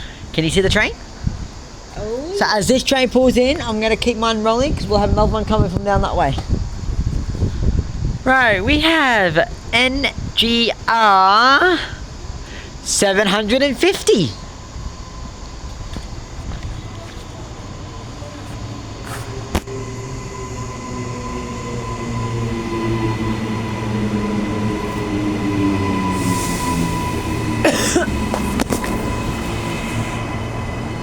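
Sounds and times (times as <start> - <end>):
train motor whine: 12.0 - 31.0.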